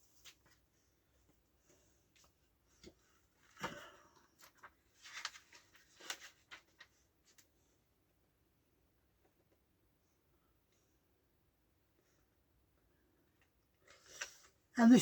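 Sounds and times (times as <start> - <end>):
book rustling and tapping: 0.0 - 7.6.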